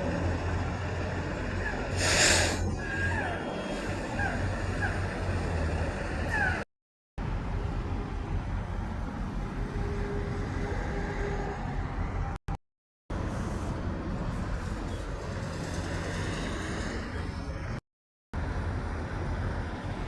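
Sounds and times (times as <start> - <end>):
road traffic engines rumbling: 0.0 - 6.6.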